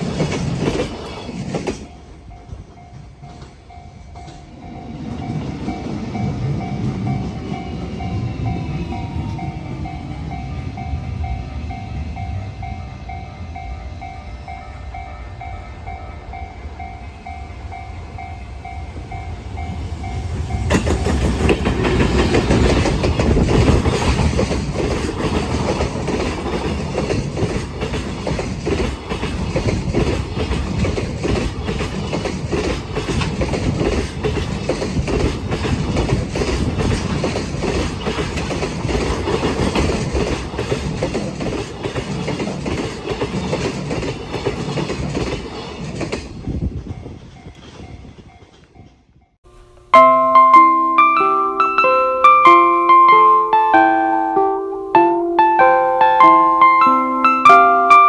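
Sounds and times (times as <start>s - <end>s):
train wheels clattering over rail joints: 0.0s - 8.1s, 20.2s - 49.3s
level crossing alarm bell: 49.9s - 58.0s.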